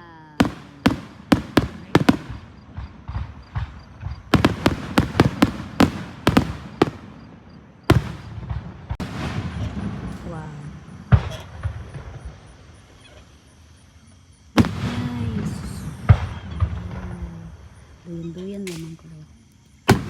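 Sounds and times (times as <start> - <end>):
fireworks bangs: 0.4 - 12.3, 14.6 - 17.2.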